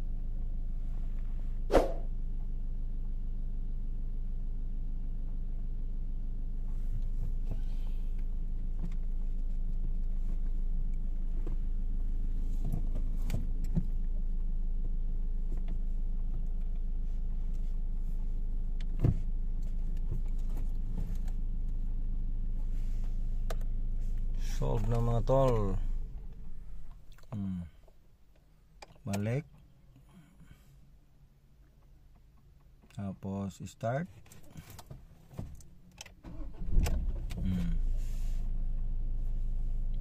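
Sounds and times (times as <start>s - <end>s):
diesel engine idling: 20.7s - 28.0s.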